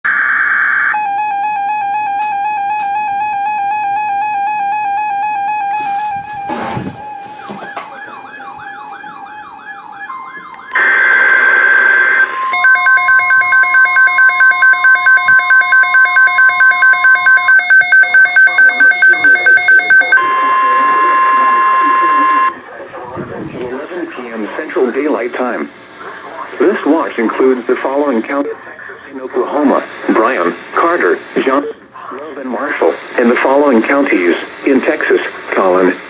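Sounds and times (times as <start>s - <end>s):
steady high alert tone: 0.9s - 22.6s
rapid electronic beeps: 12.2s - 22.5s.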